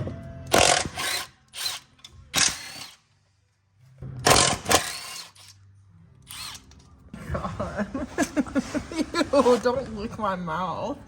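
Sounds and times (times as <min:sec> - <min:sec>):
impact wrench running: 0:00.5 - 0:03.0, 0:04.3 - 0:05.5.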